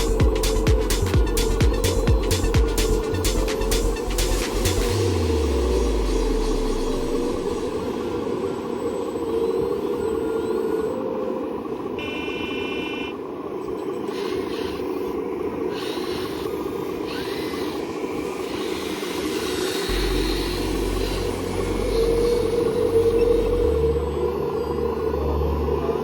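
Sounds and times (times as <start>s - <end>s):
deep engine rumble: 0.0s - 12.0s, 19.9s - 26.0s
short electronic beep: 12.0s - 13.2s
model heavy equipment machine noise: 13.2s - 26.0s.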